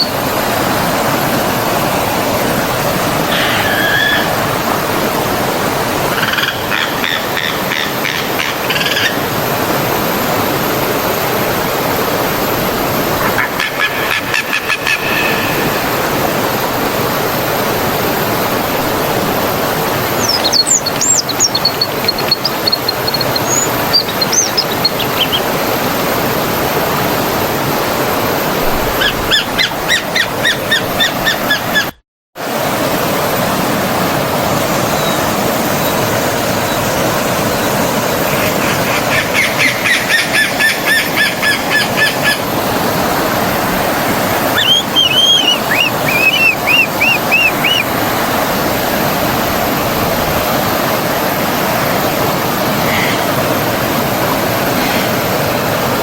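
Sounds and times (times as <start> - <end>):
stream rushing: 0.0 - 56.0
songbirds calling: 3.2 - 4.4, 20.0 - 25.8, 28.8 - 32.0, 34.9 - 42.5, 44.4 - 48.0.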